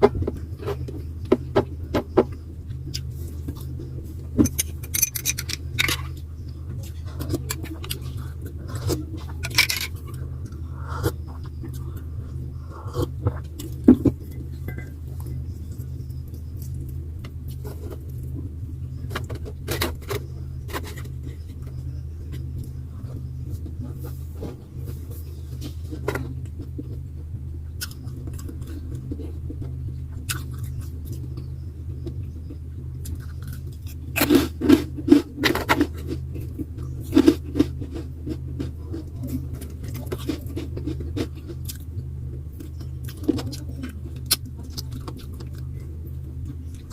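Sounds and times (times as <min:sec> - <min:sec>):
low hum: 0:00.0 - 0:46.9
utensils clicking and scraping: 0:04.4 - 0:06.2, 0:08.8 - 0:10.2.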